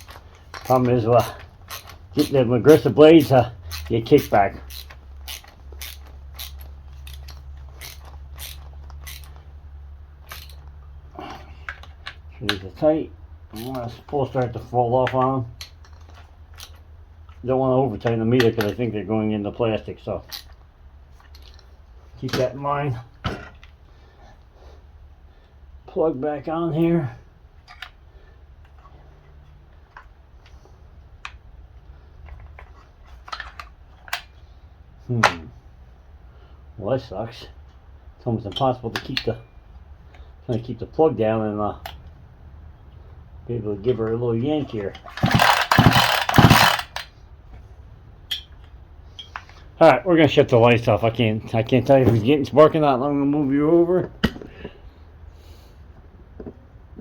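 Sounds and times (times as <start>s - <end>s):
hand tool clicking and scraping: 0.0s - 9.5s, 10.2s - 12.6s, 13.5s - 14.6s, 15.6s - 17.4s, 20.3s - 20.6s, 44.7s - 47.2s, 48.3s - 49.7s.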